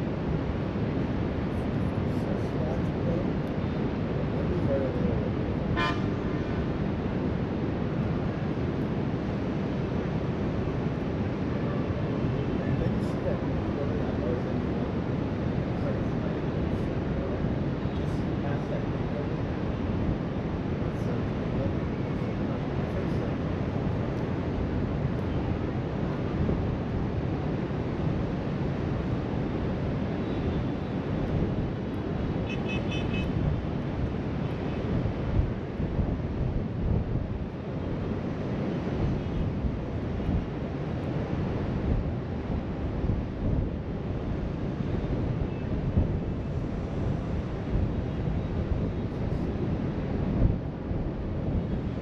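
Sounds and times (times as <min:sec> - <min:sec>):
wind on microphone: 0:19.1 - 0:52.0.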